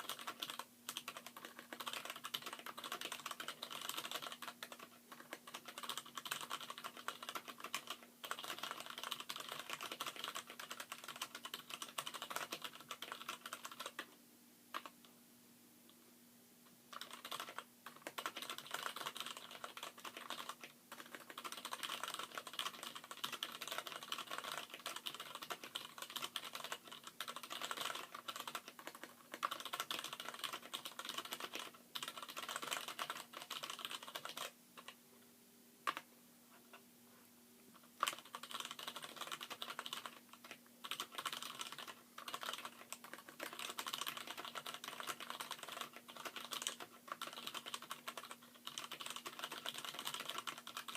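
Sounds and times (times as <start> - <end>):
fast mechanical keyboard typing: 0.0 - 14.1, 16.9 - 35.0, 38.0 - 50.9.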